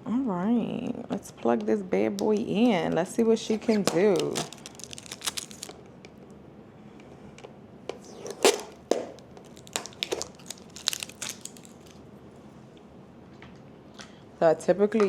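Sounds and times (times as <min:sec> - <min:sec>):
packaging crinkling: 0:03.5 - 0:05.8, 0:08.0 - 0:12.0.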